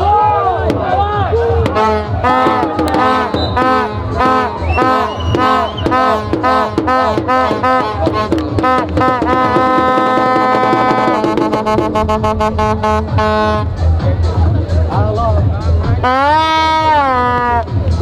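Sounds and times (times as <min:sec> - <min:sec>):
drumming: 0:00.0 - 0:18.0
pitched melody instrument: 0:01.4 - 0:18.0.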